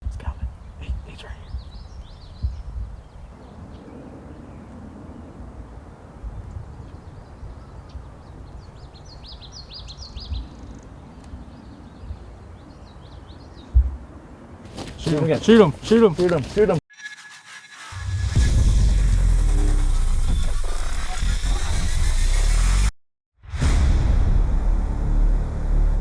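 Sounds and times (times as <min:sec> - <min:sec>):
songbird singing: 0:00.2 - 0:05.2, 0:06.5 - 0:16.8.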